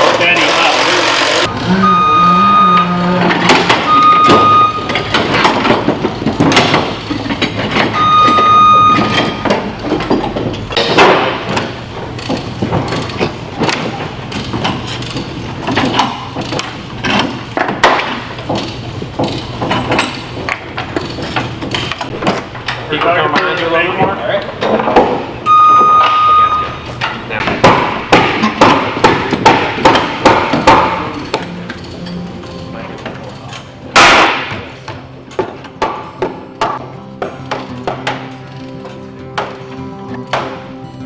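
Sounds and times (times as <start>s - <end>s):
knocks and creaks of heavy wood: 1.0s - 40.7s
machine warning alarm beeps: 1.5s - 5.1s, 7.9s - 9.7s, 25.5s - 27.0s.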